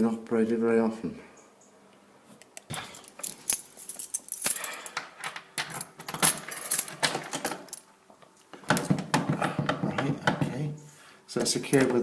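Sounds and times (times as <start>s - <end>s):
keys and lock jangling: 3.0s - 7.9s.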